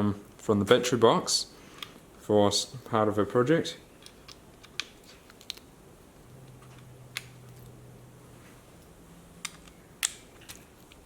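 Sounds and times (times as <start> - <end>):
faint low hum: 0.0 - 11.0
plastic pieces clicking: 4.0 - 5.7, 9.4 - 11.0.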